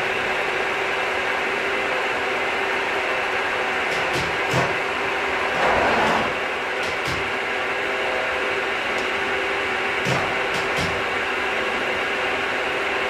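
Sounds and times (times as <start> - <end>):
milling machine running: 0.0 - 13.0.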